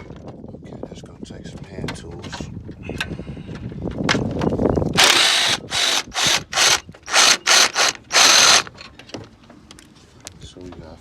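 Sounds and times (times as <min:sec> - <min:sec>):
ratchet wrench clicking: 0:05.0 - 0:08.7.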